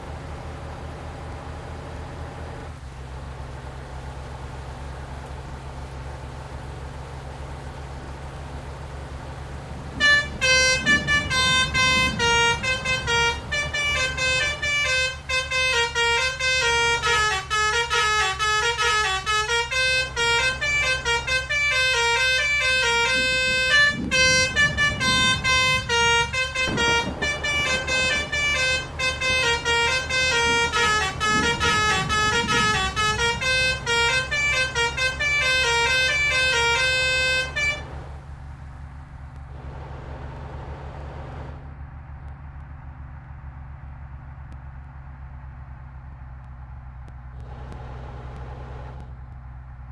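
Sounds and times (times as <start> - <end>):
bus engine running: 0.0 - 49.9
multi-tone bus horn melody: 10.0 - 38.1.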